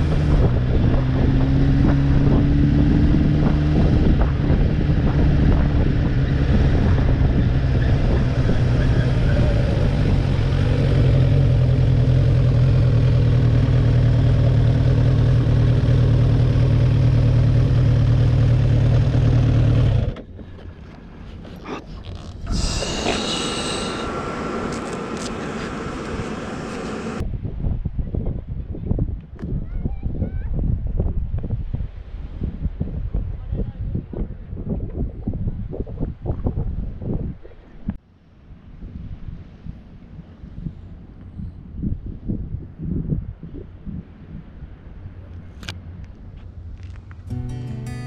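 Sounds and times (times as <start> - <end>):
wind rush: 0.0 - 11.7, 22.4 - 37.5
motorcycle engine running: 0.0 - 20.4, 22.4 - 27.2
higher whir: 22.0 - 27.2.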